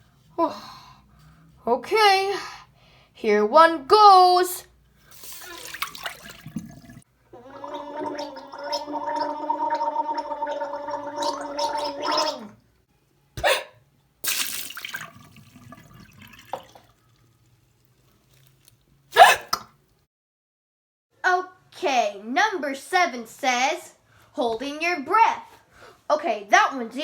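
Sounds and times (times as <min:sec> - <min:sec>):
person gargling water: 0:05.4 - 0:12.6.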